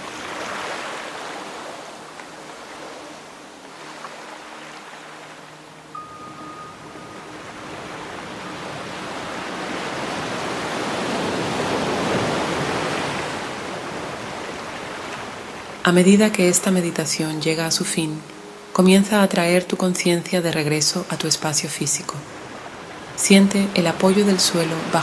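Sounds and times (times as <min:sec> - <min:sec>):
ocean surf washing in: 0:00.0 - 0:25.0
faint low steady drone: 0:01.3 - 0:10.9, 0:13.5 - 0:25.0
brief thin tone: 0:06.0 - 0:07.8.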